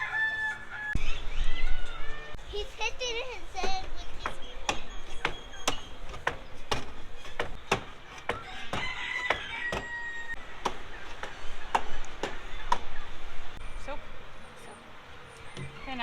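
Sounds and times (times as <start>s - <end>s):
rooster crowing: 0.0s - 2.4s, 8.2s - 12.8s
sharp knocks or clicks: 3.6s - 10.0s.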